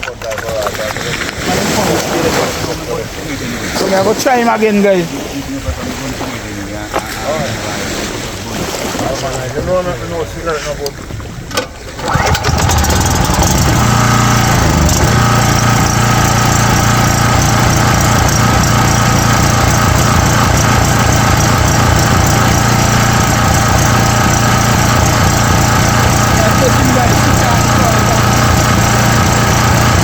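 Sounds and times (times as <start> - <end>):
generator engine running: 11.5 - 30.0.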